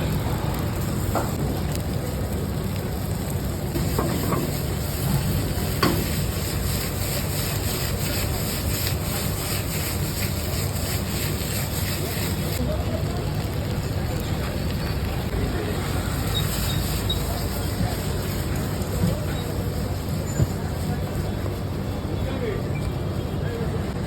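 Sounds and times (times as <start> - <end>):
food sizzling in a pan: 0.0 - 20.7
utensil scraping a pan: 3.8 - 12.6.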